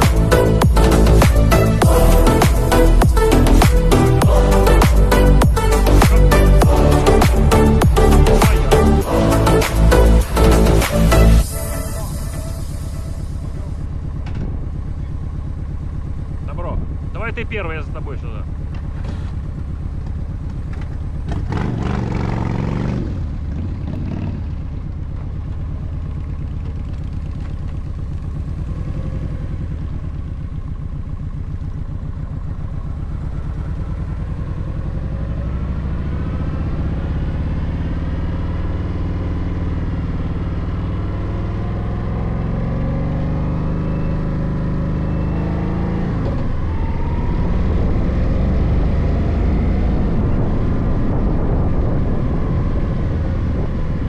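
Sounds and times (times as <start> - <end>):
motorcycle engine running: 0.0 - 54.0
wind noise on microphone: 47.4 - 54.0.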